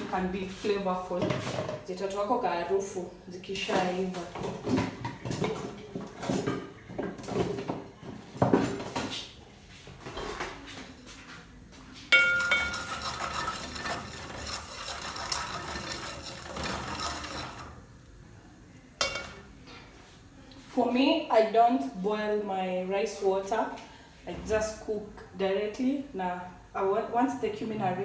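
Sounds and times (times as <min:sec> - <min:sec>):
cookware clattering and scraping: 0:01.2 - 0:01.9, 0:03.7 - 0:09.2, 0:12.1 - 0:18.2, 0:19.0 - 0:19.9
sharp metallic clang: 0:12.2 - 0:12.8, 0:19.0 - 0:19.4.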